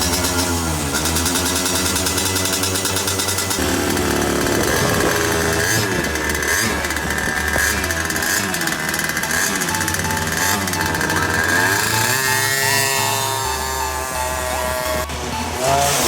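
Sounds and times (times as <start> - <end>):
go-kart engine revving: 0.0 - 16.0.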